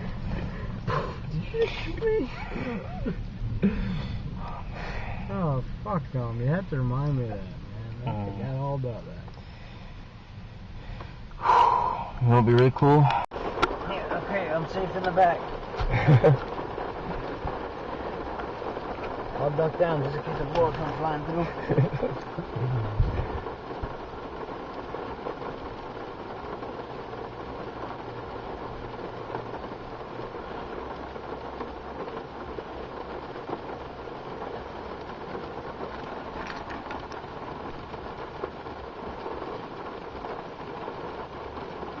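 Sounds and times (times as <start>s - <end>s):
steady rain falling: 0.0s - 42.0s.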